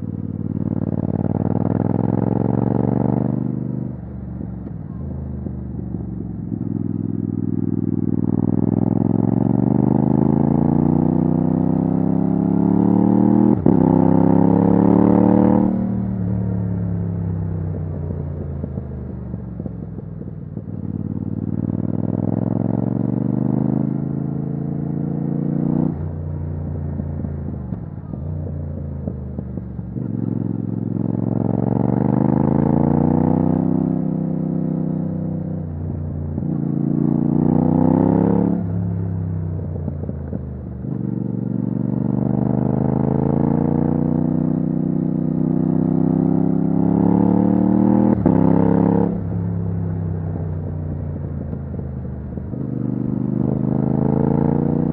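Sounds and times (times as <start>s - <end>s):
motorcycle engine accelerating: 0.0s - 54.9s.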